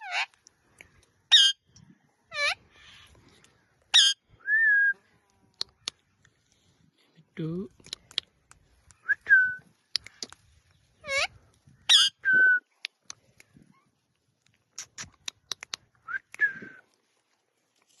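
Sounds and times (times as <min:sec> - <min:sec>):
parakeet sharp clicks: 0:14.7 - 0:15.9.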